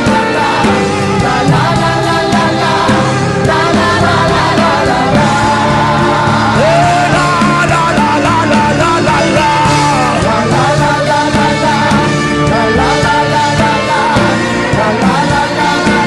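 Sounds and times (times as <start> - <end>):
people singing loudly: 0.0 - 16.0
sustained instrumental chords: 0.0 - 16.0
people shouting: 6.0 - 7.8.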